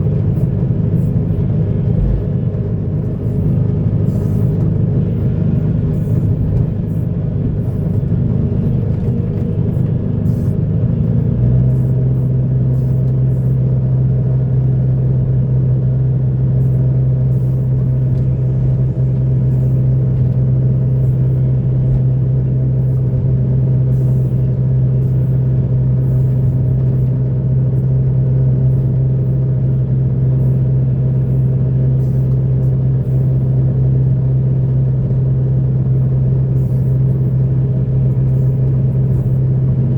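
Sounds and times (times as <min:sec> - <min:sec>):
diesel engine droning: 0:00.0 - 0:39.9.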